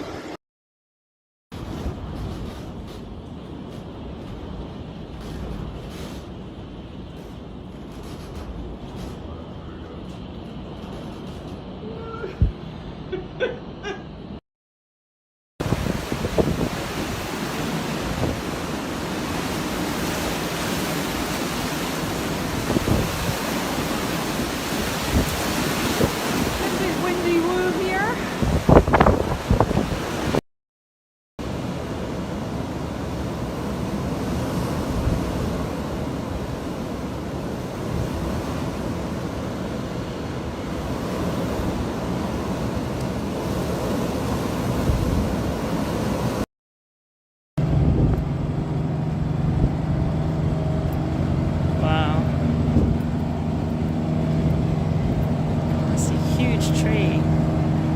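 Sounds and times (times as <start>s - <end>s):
strong wind blowing: 1.6s - 13.2s, 15.6s - 30.4s, 31.5s - 46.4s, 47.6s - 57.9s
wind buffeting microphone: 15.6s - 30.4s, 31.8s - 46.4s, 47.6s - 57.9s.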